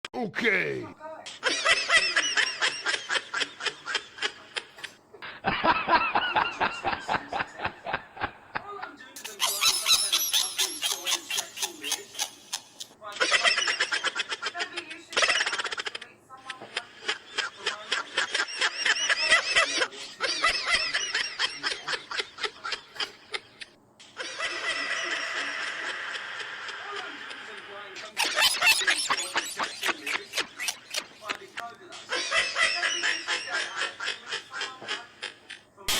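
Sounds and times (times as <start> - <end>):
high-pitched laughing voice: 9.2 - 13.9, 28.1 - 33.4
high-pitched pulsing laugh: 9.2 - 14.5, 18.1 - 35.6.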